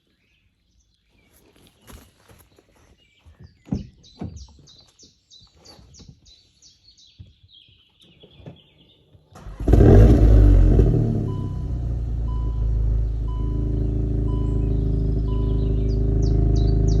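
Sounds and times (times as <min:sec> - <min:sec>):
small bird chirping: 0:00.0 - 0:09.3, 0:12.4 - 0:17.0
car engine starting loudly: 0:09.3 - 0:17.0.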